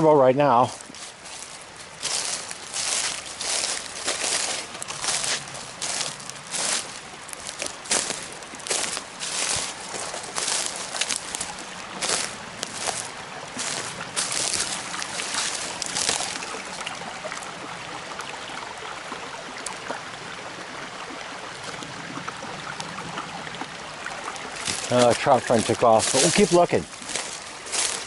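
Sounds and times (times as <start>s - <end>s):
footsteps through brush: 0.0s - 17.0s, 24.3s - 28.0s
brook running: 0.0s - 28.0s.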